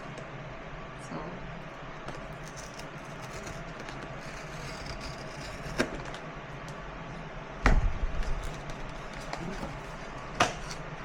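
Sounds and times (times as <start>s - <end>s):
steady background hum: 0.0s - 11.0s.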